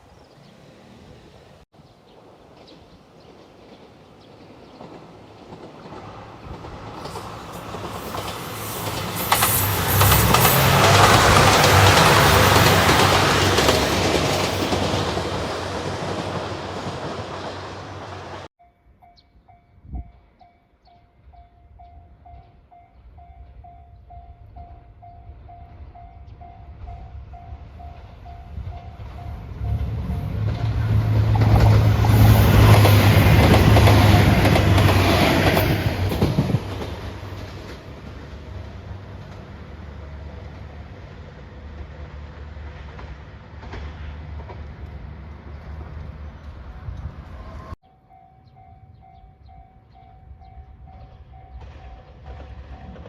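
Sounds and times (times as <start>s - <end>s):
diesel train passing: 0.0s - 18.5s, 21.2s - 53.0s
wheels clicking over rail joints: 2.6s - 18.5s, 28.0s - 39.6s.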